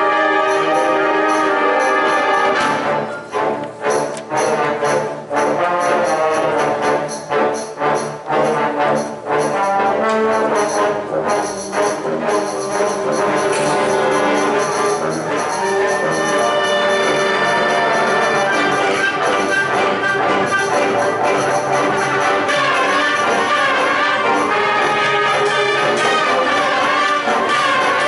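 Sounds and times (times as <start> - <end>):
concert wind band playing: 0.0 - 28.0
percussion hits: 0.0 - 28.0.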